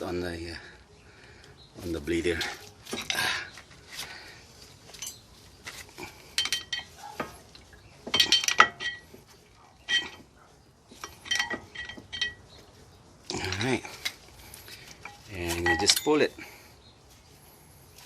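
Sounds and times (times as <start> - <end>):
metal parts clinking and rattling: 4.8 - 10.3, 10.9 - 12.6, 13.4 - 16.4.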